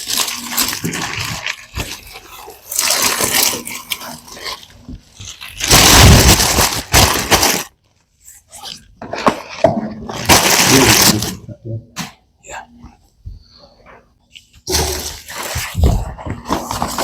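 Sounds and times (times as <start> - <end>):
drawer liner rustling and crinkling: 14.7 - 17.0.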